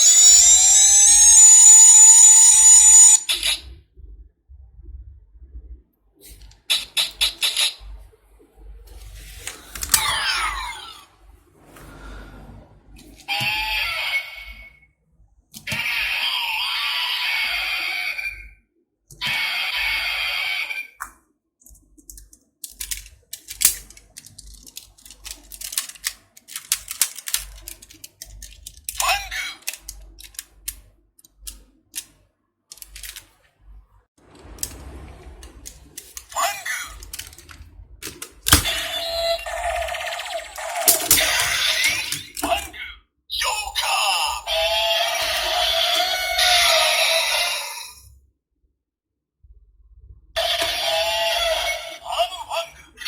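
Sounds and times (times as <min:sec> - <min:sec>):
loud pitched sound: 0:00.0 - 0:03.3
electronic toy sound effects: 0:00.0 - 0:03.6, 0:13.3 - 0:14.8, 0:38.5 - 0:42.7, 0:43.3 - 0:48.0, 0:50.4 - 0:52.8
toy belt click: 0:00.0 - 0:03.6, 0:22.1 - 0:32.1, 0:40.2 - 0:42.5
low hum: 0:00.0 - 0:06.2, 0:33.7 - 0:40.8.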